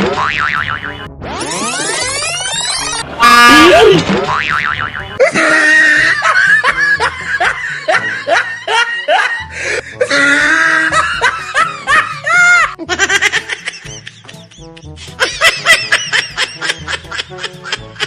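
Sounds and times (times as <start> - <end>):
person laughing: 5.2 - 18.0.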